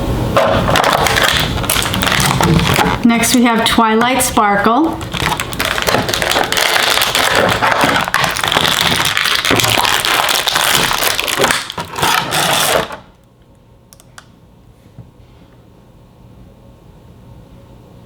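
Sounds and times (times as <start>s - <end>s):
plastic packaging tearing: 0.4s - 3.0s, 4.9s - 13.1s
plastic packaging crinkling: 0.5s - 13.1s.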